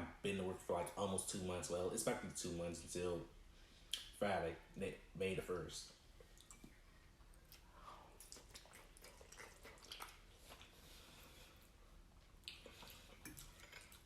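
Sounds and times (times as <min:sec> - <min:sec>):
wet chewing: 0:06.2 - 0:11.2, 0:12.2 - 0:14.0.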